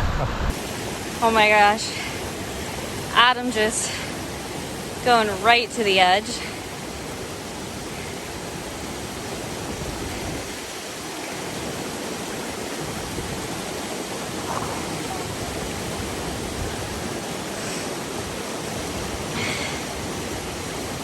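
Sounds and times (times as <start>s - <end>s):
waterfall rushing: 0.5s - 21.0s.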